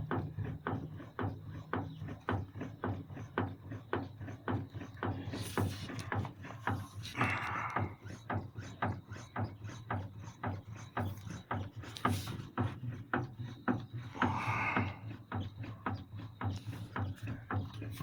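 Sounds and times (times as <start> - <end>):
steady low hum: 0.0 - 18.0
steering rack knocking: 11.0 - 15.0.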